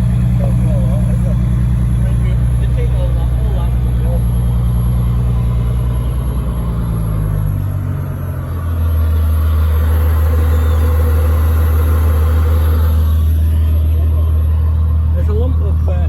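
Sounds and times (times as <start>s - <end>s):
car engine idling: 0.0s - 16.0s.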